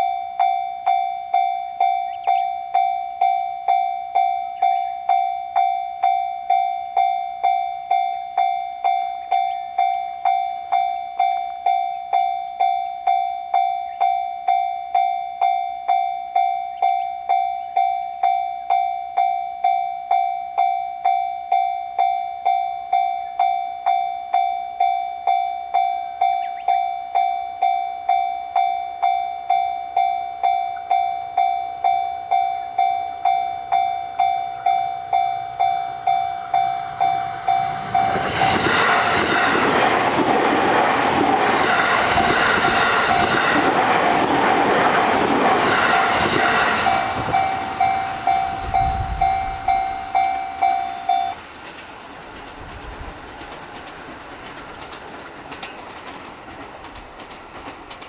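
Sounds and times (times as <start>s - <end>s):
level-crossing warning bell: 0.0s - 58.0s
train wheels clattering over rails: 34.7s - 58.0s.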